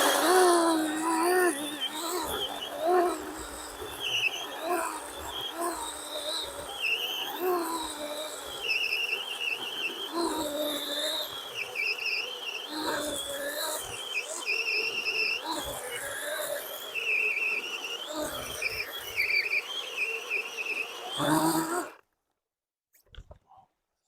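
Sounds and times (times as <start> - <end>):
birds singing: 0.0 - 21.9
insects calling: 0.0 - 22.0.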